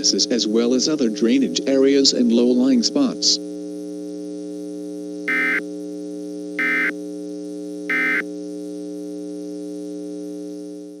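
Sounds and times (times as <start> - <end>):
warbling digital data tones: 5.3 - 5.6, 6.6 - 6.9, 7.9 - 8.2.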